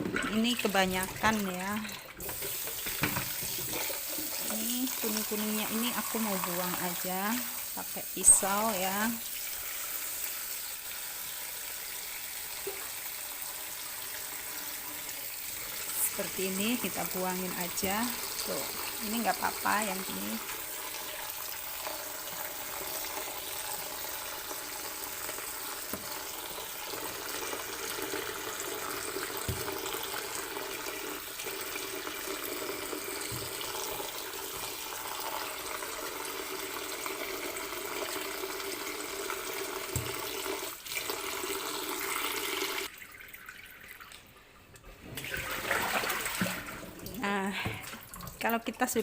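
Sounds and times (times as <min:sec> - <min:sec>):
tap running into sink: 0:02.2 - 0:04.5, 0:29.4 - 0:30.0, 0:39.8 - 0:40.4.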